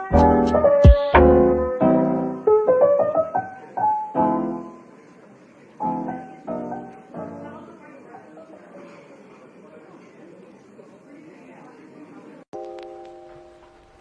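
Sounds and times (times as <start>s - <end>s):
piano music: 0.0s - 4.9s, 12.6s - 14.0s.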